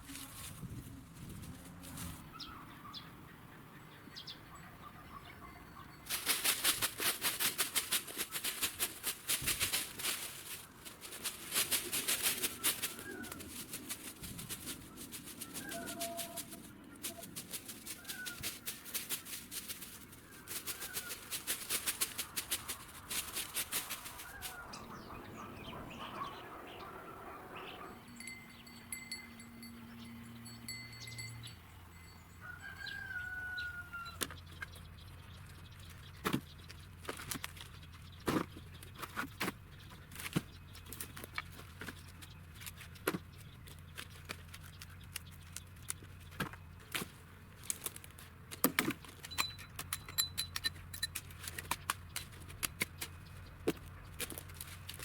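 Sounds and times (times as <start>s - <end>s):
rapid fluttering rattle: 6.1s - 24.7s
bird chirps: 24.2s - 36.9s.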